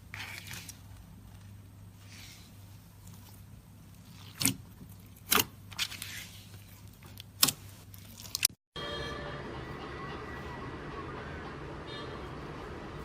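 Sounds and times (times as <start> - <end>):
slime squelching by hand: 2.0 - 8.6.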